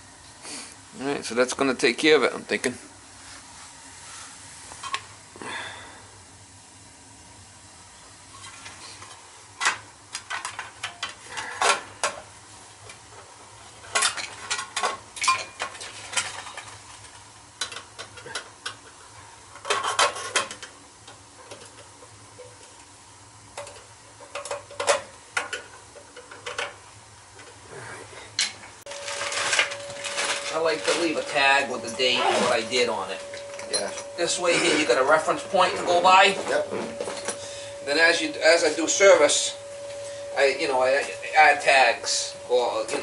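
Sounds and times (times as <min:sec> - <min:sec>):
faint low hum: 0:00.0 - 0:43.0
metal tools clinking and rattling: 0:28.4 - 0:40.0.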